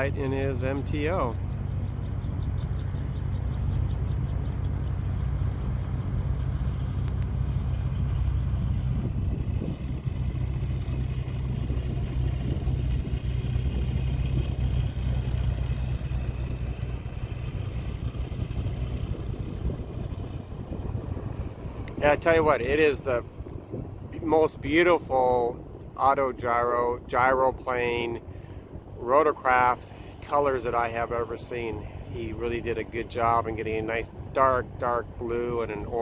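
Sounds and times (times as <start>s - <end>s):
gyroplane engine droning: 0.0s - 27.1s.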